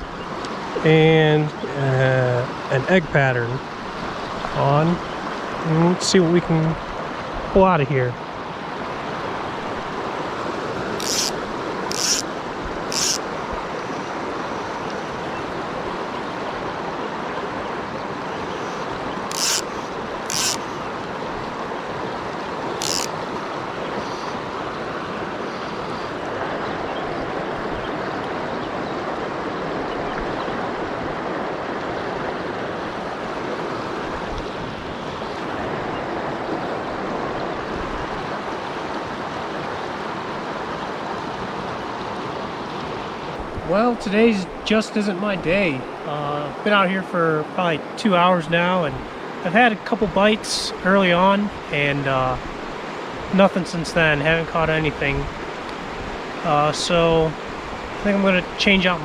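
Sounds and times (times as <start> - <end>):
flowing creek: 0.0 - 59.0
short sharp high-pitched sounds: 11.0 - 12.3, 12.9 - 13.2, 18.6 - 20.8, 22.8 - 23.1.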